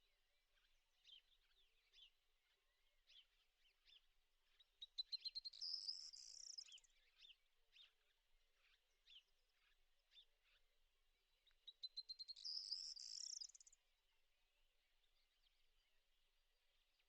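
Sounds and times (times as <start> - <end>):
small birds chirping: 0.0 - 17.0
bird song with buzzy trill: 11.9 - 13.6.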